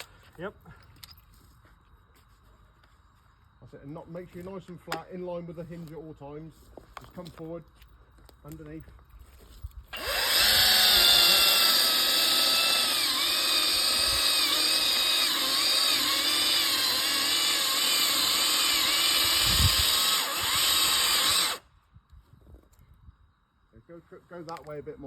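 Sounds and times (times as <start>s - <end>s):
electric chainsaw cutting wood: 9.9s - 21.7s.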